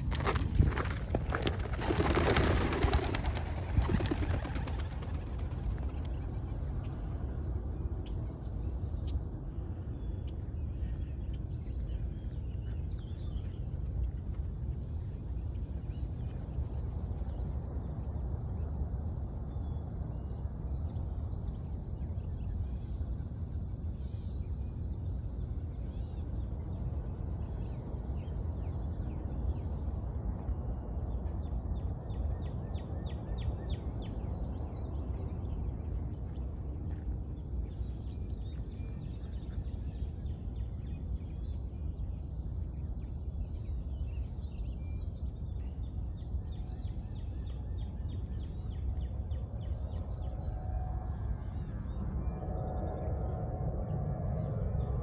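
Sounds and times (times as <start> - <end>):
small birds chirping: 0.0 - 7.2
wind rumble on microphone: 0.0 - 55.0.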